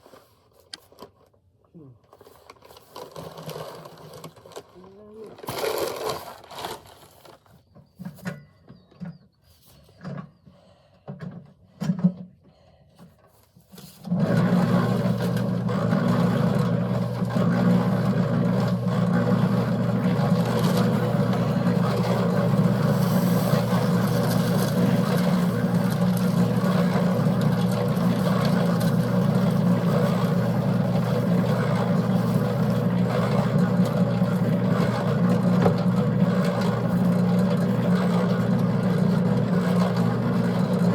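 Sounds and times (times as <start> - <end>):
concrete mixer running: 2.2 - 7.5, 13.8 - 40.9.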